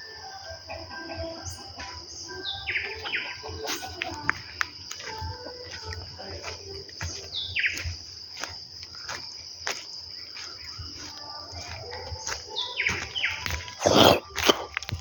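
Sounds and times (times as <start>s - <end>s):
insect trill: 0.0s - 15.0s
bird chirps: 1.2s - 5.2s, 7.0s - 9.1s, 10.2s - 14.1s.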